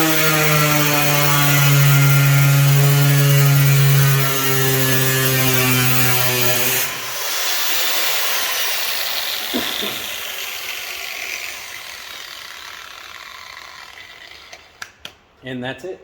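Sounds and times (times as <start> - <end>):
angle grinder cutting sheet metal: 0.0 - 14.9
person speaking: 15.4 - 16.0.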